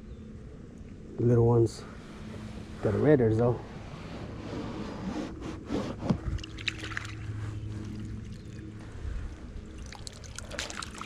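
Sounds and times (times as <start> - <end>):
steady low hum: 0.0 - 11.0
water trickling and dripping: 6.4 - 11.0.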